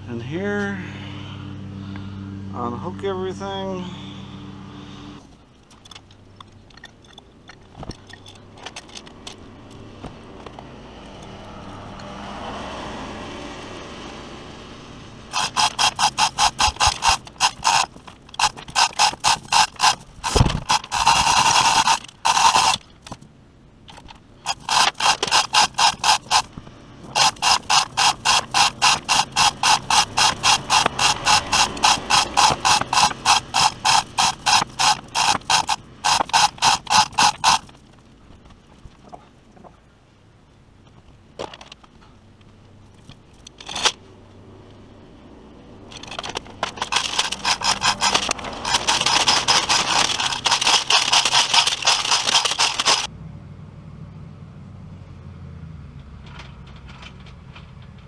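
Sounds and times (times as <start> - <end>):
ratchet wrench clicking: 15.3 - 23.2, 23.9 - 37.8, 45.9 - 53.1.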